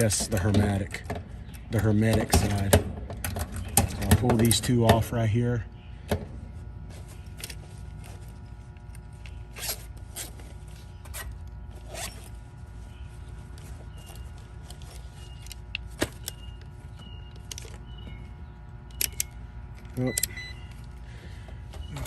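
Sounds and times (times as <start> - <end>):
steady electrical hum: 0.0 - 22.0
meter probes being handled: 6.0 - 22.0.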